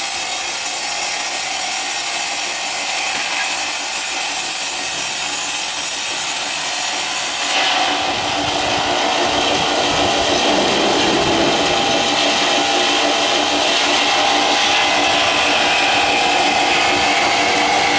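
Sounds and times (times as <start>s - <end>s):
power saw cutting wood: 0.0s - 17.9s
rough machine running: 4.9s - 17.9s.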